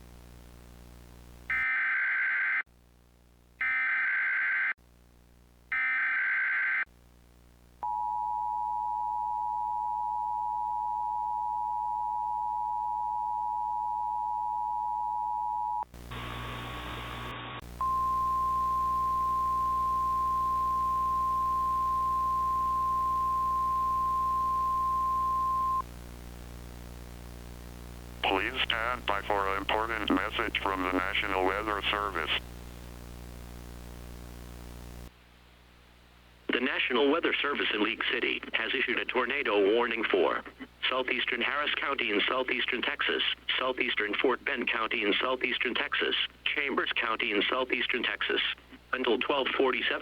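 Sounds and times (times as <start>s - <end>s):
noisy burst: 16.0s - 35.1s
steady warning alarm tone: 17.8s - 25.8s.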